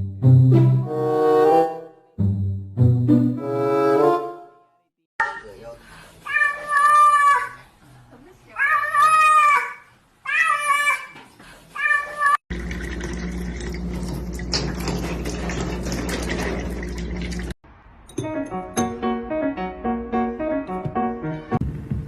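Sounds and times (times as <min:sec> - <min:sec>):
cat meowing: 0:08.6 - 0:11.2.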